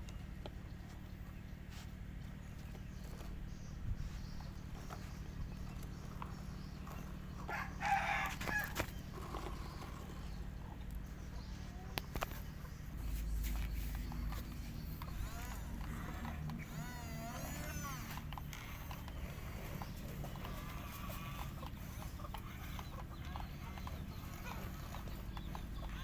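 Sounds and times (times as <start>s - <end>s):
animal call: 4.0s - 26.0s
diesel engine idling: 8.9s - 26.0s.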